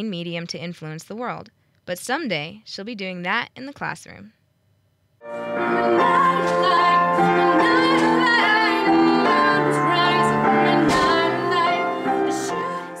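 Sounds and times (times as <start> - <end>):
instrumental accompaniment: 5.2 - 13.0
woman singing: 5.6 - 13.0.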